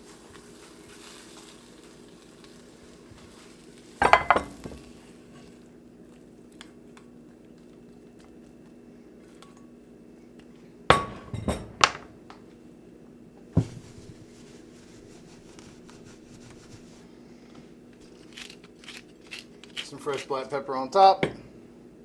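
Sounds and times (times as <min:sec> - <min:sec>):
low steady hum: 0:00.0 - 0:22.0
kitchenware knocking and clinking: 0:04.0 - 0:04.8, 0:10.9 - 0:12.1.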